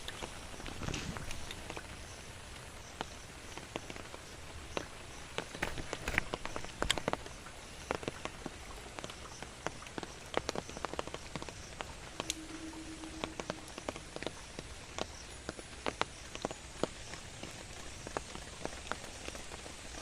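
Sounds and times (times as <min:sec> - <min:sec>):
heavy rain hissing: 0:00.0 - 0:20.0
raindrops tapping a hard surface: 0:00.0 - 0:20.0
low steady tone: 0:08.6 - 0:17.0.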